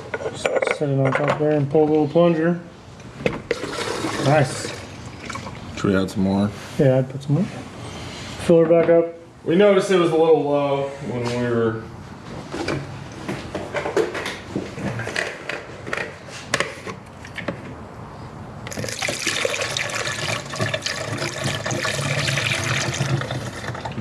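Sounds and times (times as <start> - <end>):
liquid pouring from a jug: 3.5 - 5.8, 18.7 - 24.0.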